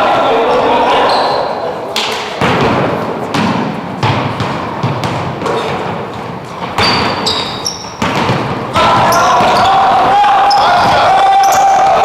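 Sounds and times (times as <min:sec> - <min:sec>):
basketball bouncing on gym floor: 0:02.4 - 0:09.8
sneakers squeaking on court: 0:03.3 - 0:11.8.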